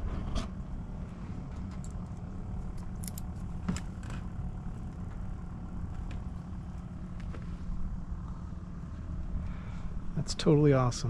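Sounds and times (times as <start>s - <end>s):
steady low rumble: 0.0s - 11.0s
metal hooks clicking and jingling: 2.7s - 3.4s.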